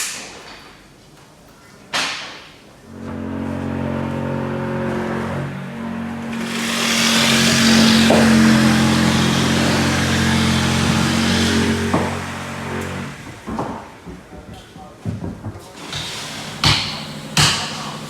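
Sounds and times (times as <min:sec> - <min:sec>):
boat engine running: 0:02.9 - 0:13.4
loud rushing hiss: 0:06.3 - 0:13.1, 0:15.8 - 0:18.0.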